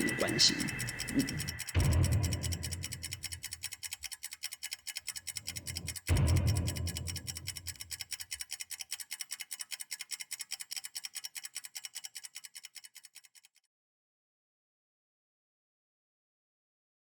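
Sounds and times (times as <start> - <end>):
rapid scratchy ticking: 0.0 - 13.6
deep boom: 1.8 - 3.2, 6.1 - 7.8.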